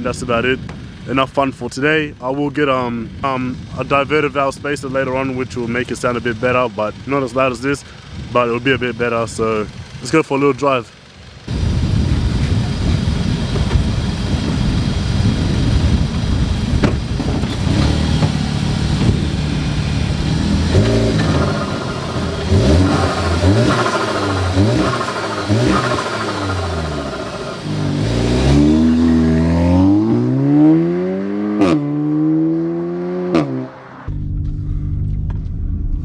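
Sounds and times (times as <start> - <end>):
turbo car engine revving: 11.0 - 34.2
short burst on throttle lift: 17.5 - 30.3.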